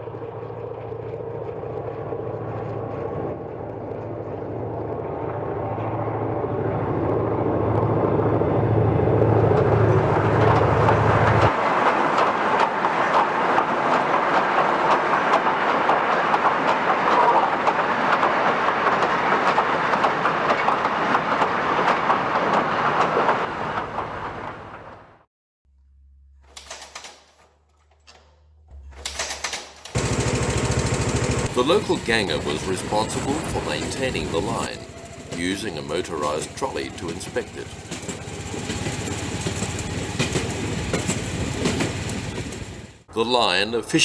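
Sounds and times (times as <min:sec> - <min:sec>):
diesel locomotive engine throbbing: 0:00.0 - 0:25.2, 0:30.0 - 0:44.0
train wheels clickety-clack: 0:09.6 - 0:25.1, 0:30.4 - 0:44.0.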